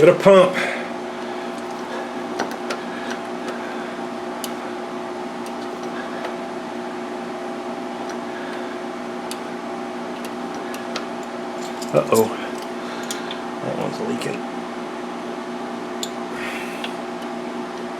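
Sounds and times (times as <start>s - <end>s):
steady machine hum: 0.0s - 17.9s.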